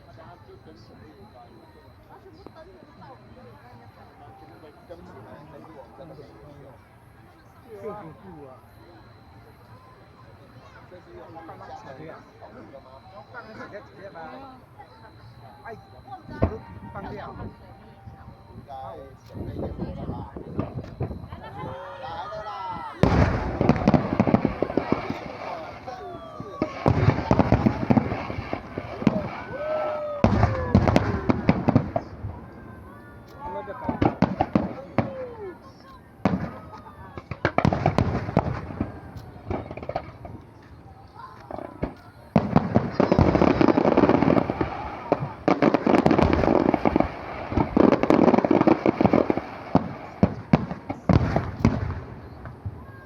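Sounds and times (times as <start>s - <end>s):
fireworks whistling: 0.0s - 53.0s
fireworks bangs and crackling pops: 18.9s - 21.6s, 23.0s - 53.0s.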